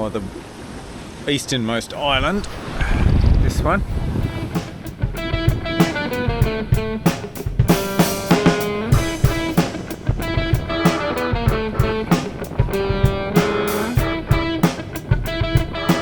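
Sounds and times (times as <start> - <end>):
plucked guitar: 4.2 - 16.0
drum kit beat: 4.3 - 16.0.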